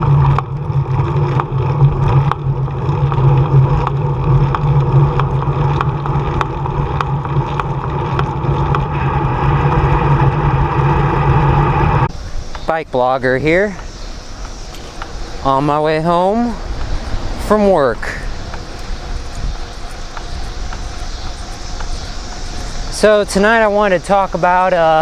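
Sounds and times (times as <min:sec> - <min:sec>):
bicycle knocking clunk: 0:00.0 - 0:09.8
road hum: 0:00.0 - 0:25.0
wind on microphone: 0:00.0 - 0:25.0.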